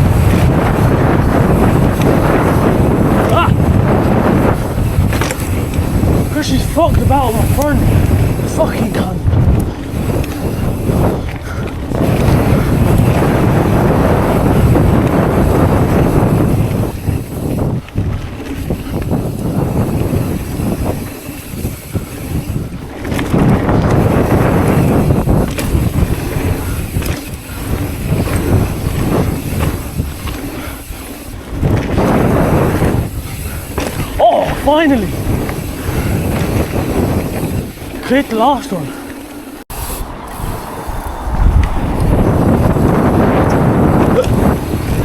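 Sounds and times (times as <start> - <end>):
wind buffeting microphone: 0.0 - 45.0
bike knocks: 0.1 - 6.2, 31.6 - 34.8.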